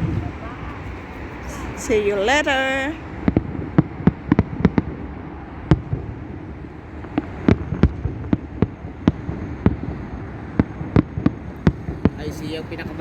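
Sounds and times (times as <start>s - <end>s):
fireworks cracking and popping: 7.0s - 13.0s.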